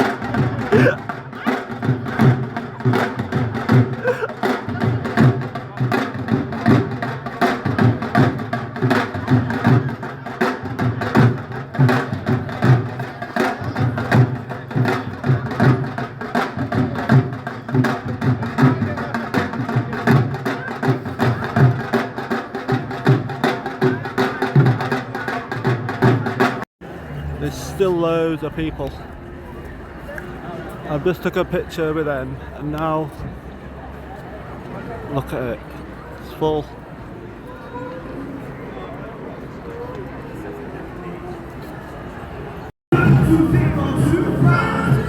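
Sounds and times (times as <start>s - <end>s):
percussion steady beat: 0.0s - 26.7s, 42.9s - 45.0s
street band playing: 0.0s - 45.0s.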